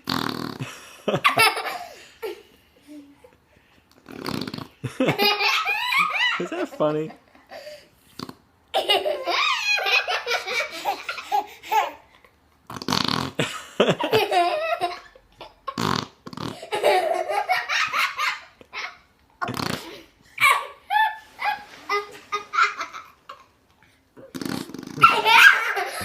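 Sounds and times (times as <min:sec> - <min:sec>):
baby blowing raspberries: 0:04.0 - 0:04.8, 0:12.7 - 0:13.4, 0:19.4 - 0:20.1, 0:24.2 - 0:25.2.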